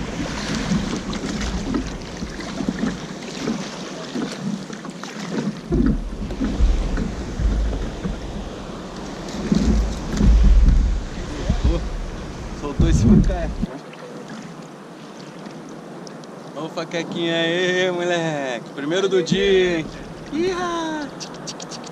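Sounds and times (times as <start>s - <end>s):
wind buffeting microphone: 0.0s - 3.6s, 5.6s - 13.7s
water lapping against a hull: 0.0s - 21.9s.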